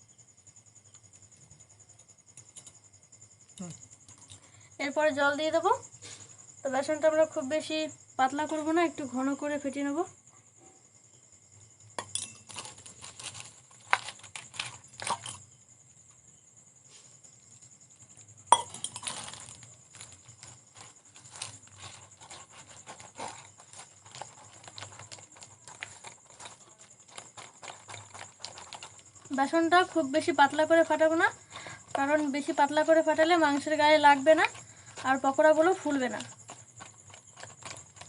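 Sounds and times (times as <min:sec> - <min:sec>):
crickets trilling: 0:00.0 - 0:38.0
batter beaten in a bowl: 0:18.5 - 0:38.0.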